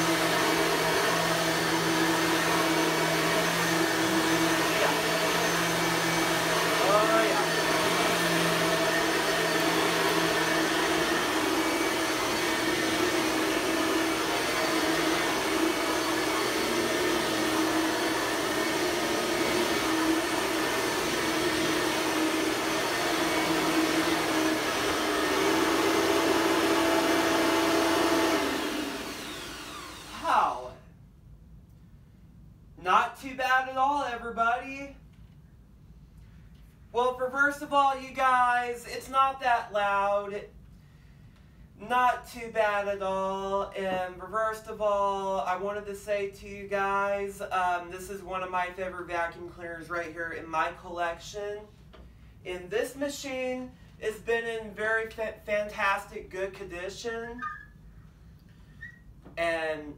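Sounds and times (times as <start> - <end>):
vacuum motor winding down: 0.0 - 30.7
vacuum cleaner running: 0.0 - 30.8.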